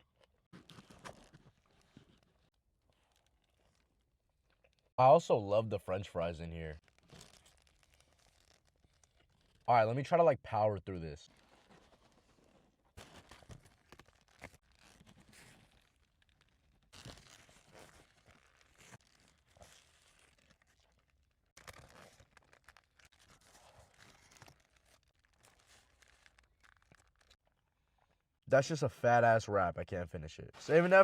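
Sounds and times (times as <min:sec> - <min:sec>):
wrapper crinkling: 0:06.8 - 0:09.7, 0:11.3 - 0:27.4.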